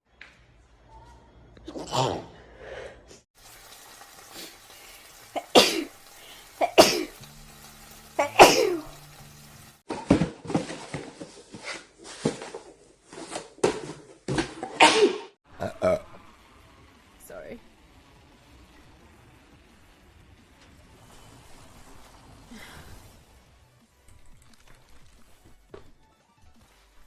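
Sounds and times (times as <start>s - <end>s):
woman sneezing: 14.8s - 15.3s.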